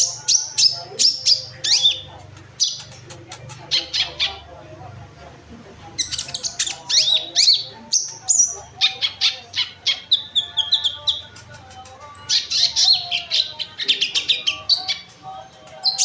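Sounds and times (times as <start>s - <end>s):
sunbird chirping song: 6.0s - 15.2s.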